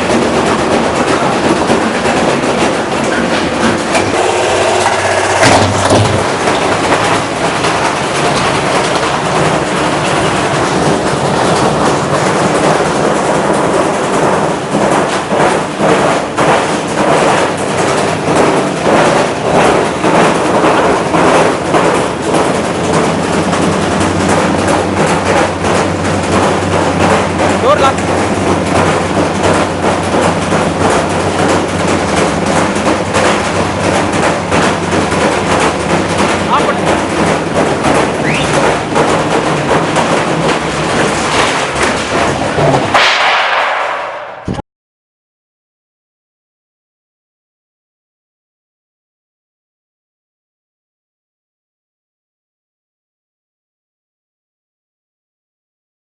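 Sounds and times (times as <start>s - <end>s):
brick clattering in washing machine: 0.0s - 43.2s.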